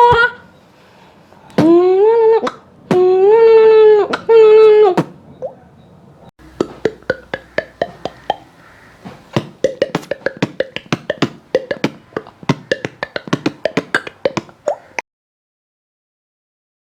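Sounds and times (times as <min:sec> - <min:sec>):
beatboxing mouth clicks and pops: 0:06.5 - 0:08.5, 0:09.3 - 0:15.0.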